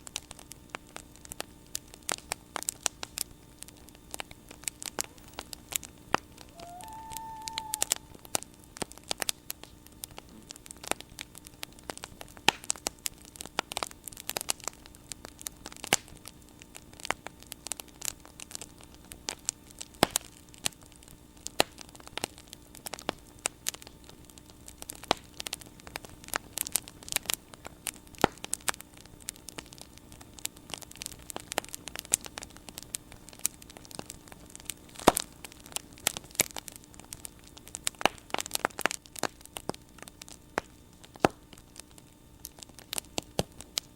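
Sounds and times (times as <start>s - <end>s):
bonfire crackling and popping: 0.0s - 43.9s
faint steady hum: 0.0s - 43.9s
low hiss: 1.0s - 11.4s.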